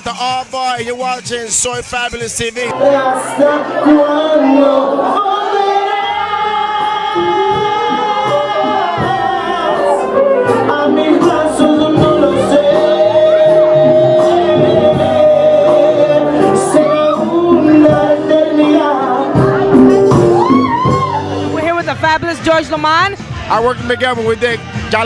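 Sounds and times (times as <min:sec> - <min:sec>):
person singing long notes: 0:02.7 - 0:21.6
band accompaniment: 0:04.6 - 0:25.0.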